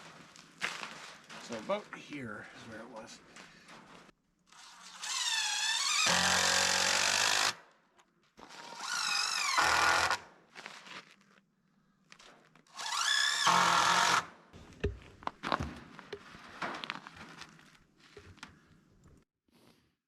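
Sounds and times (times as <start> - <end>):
power drill driving screws: 4.5 - 7.6, 8.4 - 10.2, 12.7 - 14.3.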